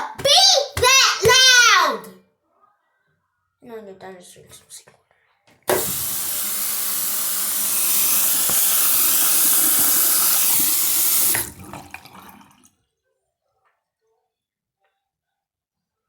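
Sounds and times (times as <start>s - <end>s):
water running from a tap: 5.7s - 12.7s
water trickle: 5.7s - 12.7s.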